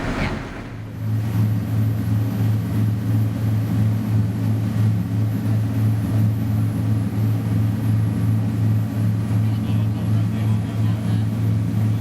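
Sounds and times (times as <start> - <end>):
boat engine droning: 0.0 - 1.1.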